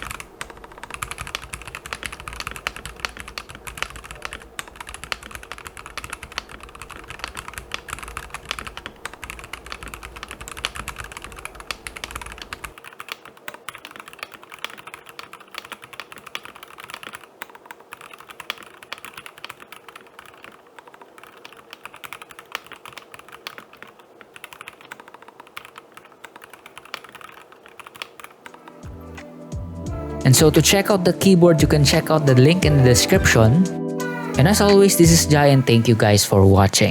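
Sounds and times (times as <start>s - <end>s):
fast typing on mechanical keyboard: 0.0s - 29.0s.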